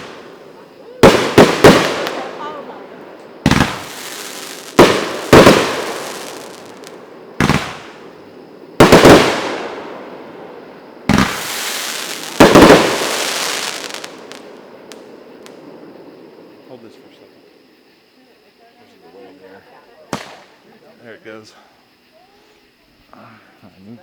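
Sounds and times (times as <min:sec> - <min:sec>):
fireworks bangs with echo: 0:00.0 - 0:15.8, 0:20.1 - 0:20.6.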